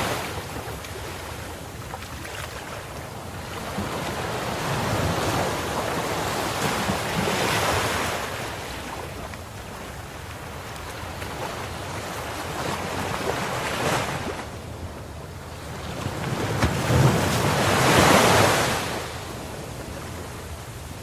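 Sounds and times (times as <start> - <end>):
ocean waves breaking: 0.0 - 21.0.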